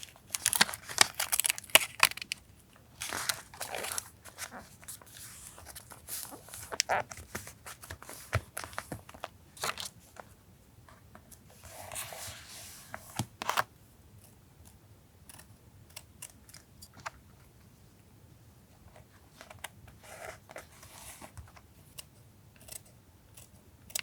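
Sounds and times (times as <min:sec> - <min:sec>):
paper taps and crinkles: 0:03.0 - 0:10.3.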